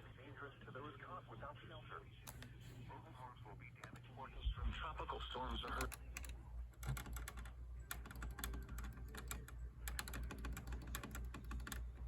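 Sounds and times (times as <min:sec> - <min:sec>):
steady low hum: 0:00.0 - 0:12.0
computer keyboard typing: 0:05.6 - 0:12.0.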